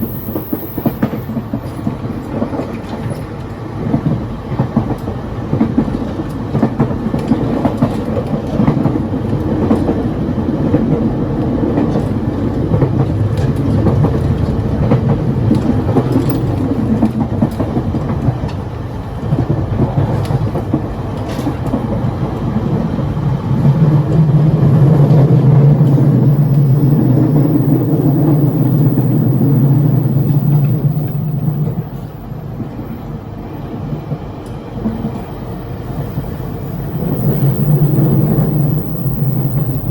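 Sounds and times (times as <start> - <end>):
train wheels rumbling on rail: 0.0 - 39.9
low hum: 23.5 - 32.4, 34.8 - 39.9.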